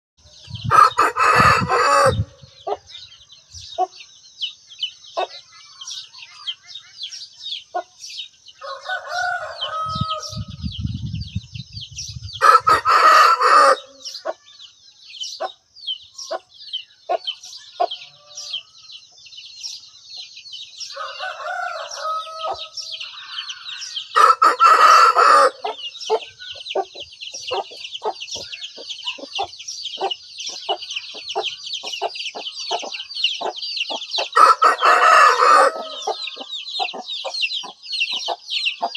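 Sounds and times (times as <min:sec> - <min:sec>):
hens clucking: 0:00.5 - 0:02.9, 0:12.3 - 0:14.4, 0:21.4 - 0:38.9
rooster crowing: 0:00.6 - 0:02.8, 0:08.6 - 0:10.6, 0:12.4 - 0:14.2, 0:20.9 - 0:26.2, 0:34.2 - 0:36.9.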